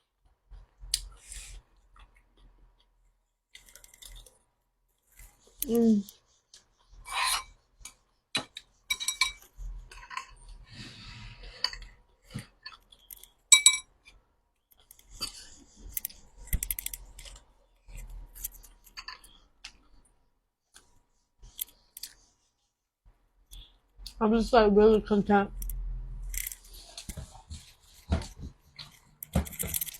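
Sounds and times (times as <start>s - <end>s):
chewing: 0.9s - 4.5s
utensils clinking on dishes: 8.4s - 10.4s, 13.5s - 13.9s.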